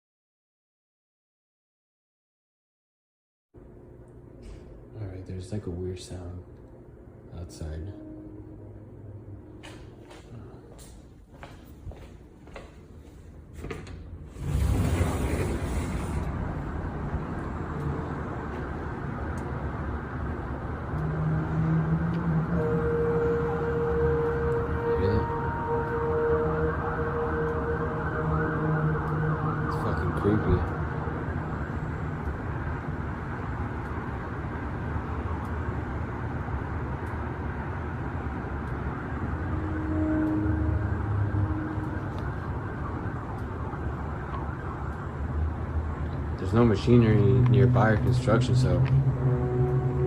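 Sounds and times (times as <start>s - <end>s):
low rumbling hum: 3.6s - 50.0s
lower steady tone: 6.7s - 10.7s, 16.2s - 50.0s
faint higher tone: 7.5s - 9.8s.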